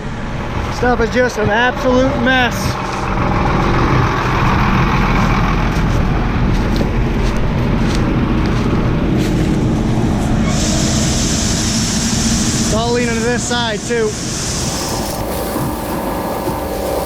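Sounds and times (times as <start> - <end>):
farm machinery engine running: 0.0 - 17.0
steady high hiss: 10.3 - 17.0.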